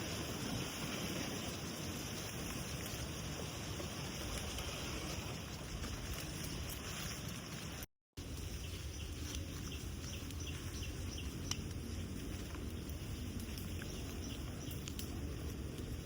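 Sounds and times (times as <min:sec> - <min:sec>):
leaves rustling: 0:00.0 - 0:16.0
faint clicks: 0:12.4 - 0:15.9.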